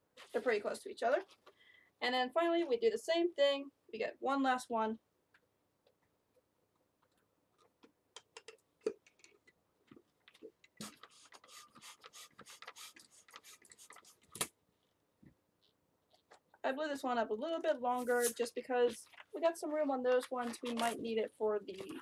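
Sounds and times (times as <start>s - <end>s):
balloon rubbing and squeaking: 10.8s - 14.3s.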